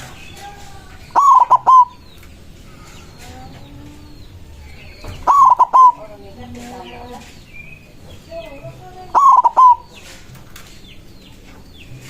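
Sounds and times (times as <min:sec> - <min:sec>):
dove cooing: 0:00.0 - 0:02.1, 0:02.7 - 0:07.3, 0:07.9 - 0:10.3
other birds chirping: 0:00.0 - 0:12.0.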